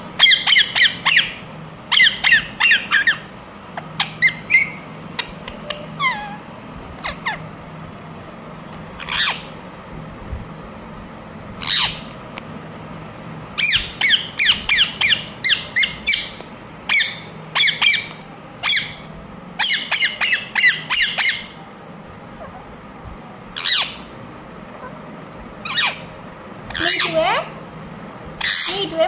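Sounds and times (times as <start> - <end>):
parrot squawks: 0.2 - 5.4, 6.0 - 6.4, 7.0 - 7.4, 9.0 - 9.6, 11.6 - 12.1, 13.6 - 21.6, 23.6 - 24.1, 25.6 - 26.1, 26.7 - 27.2, 28.4 - 28.9.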